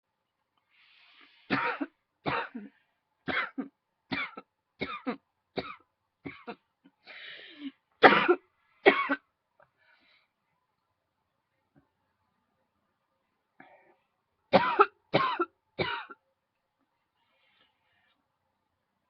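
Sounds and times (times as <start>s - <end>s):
woman coughing: 1.5s - 2.7s, 3.3s - 6.6s, 8.0s - 9.2s, 14.6s - 16.2s.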